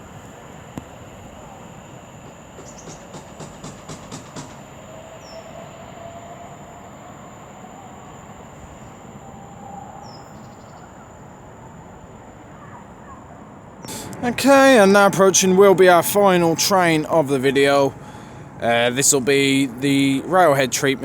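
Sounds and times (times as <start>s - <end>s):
train rumble with whine: 0.0s - 12.1s, 13.9s - 21.0s
train wheels clacking: 2.2s - 4.8s.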